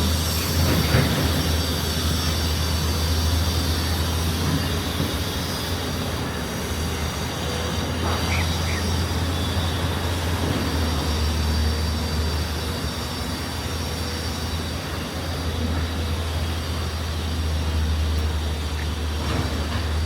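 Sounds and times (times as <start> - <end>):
road traffic rumble: 0.0 - 20.0.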